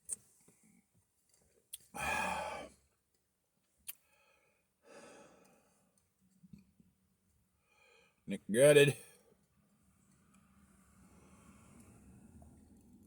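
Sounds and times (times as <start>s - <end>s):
man sighing: 1.9s - 2.7s.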